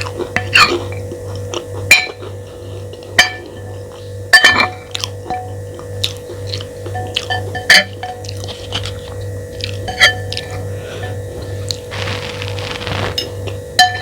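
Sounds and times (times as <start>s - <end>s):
cutlery clinking against a plate: 4.4s - 5.5s.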